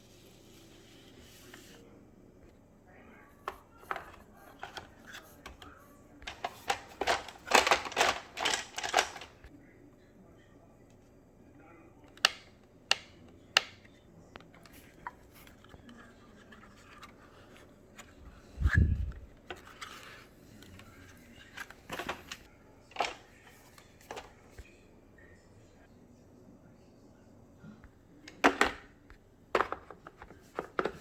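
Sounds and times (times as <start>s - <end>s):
handling clicks and knocks: 3.8s - 9.5s, 21.5s - 23.2s, 28.3s - 31.0s.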